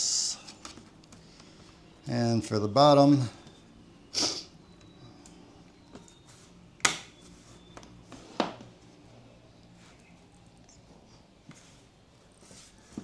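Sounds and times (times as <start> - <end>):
laptop cover clicking into place: 6.8 - 7.2.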